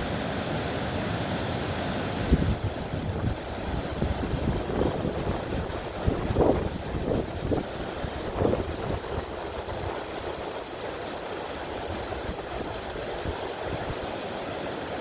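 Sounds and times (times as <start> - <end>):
waterfall roaring: 0.0 - 15.0
wind buffeting microphone: 2.2 - 10.7.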